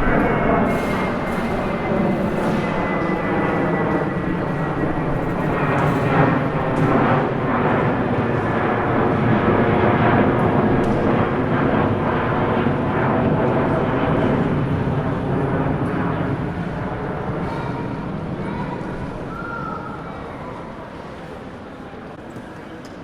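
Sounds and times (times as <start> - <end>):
jet engines roaring: 0.0 - 22.1.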